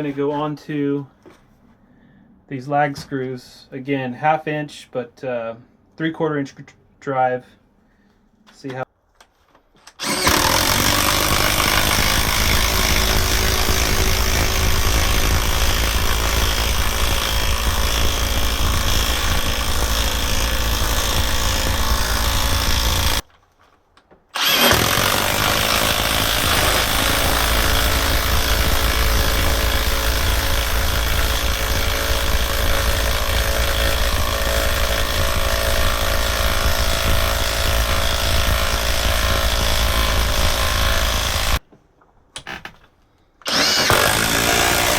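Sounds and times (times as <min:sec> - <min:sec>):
impact wrench hammering: 0:24.4 - 0:41.6.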